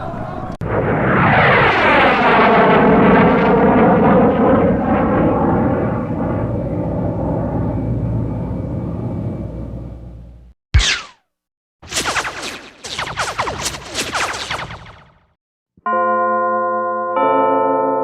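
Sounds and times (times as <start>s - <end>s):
aircraft passing overhead: 0.6s - 10.4s.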